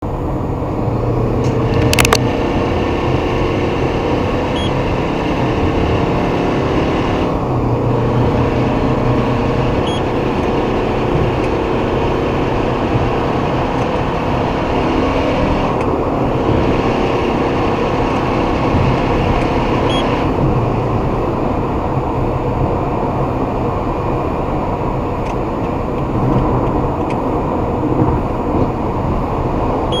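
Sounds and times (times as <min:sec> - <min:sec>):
car engine running: 0:00.0 - 0:30.0
sharp click: 0:01.4 - 0:02.2.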